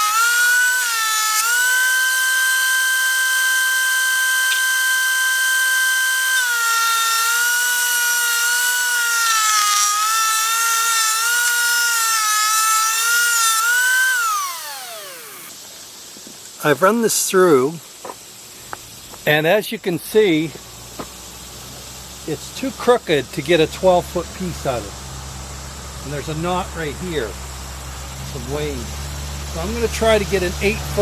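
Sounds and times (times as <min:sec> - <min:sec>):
motor winding down: 0:00.0 - 0:15.5
thickness planer whining: 0:00.0 - 0:15.5.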